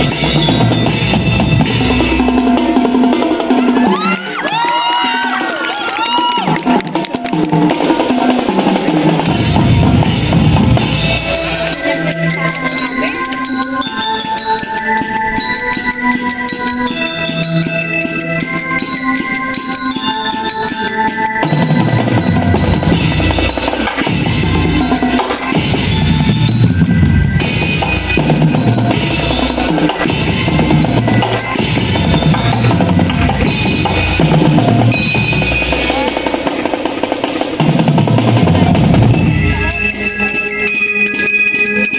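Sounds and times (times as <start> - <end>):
marching drum line: 0.0 - 41.3.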